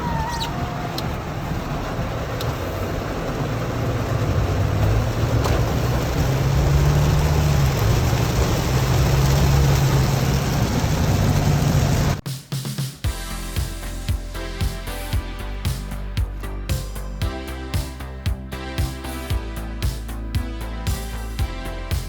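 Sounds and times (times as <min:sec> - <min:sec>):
car engine hum: 0:00.0 - 0:12.2
road noise: 0:00.0 - 0:12.2.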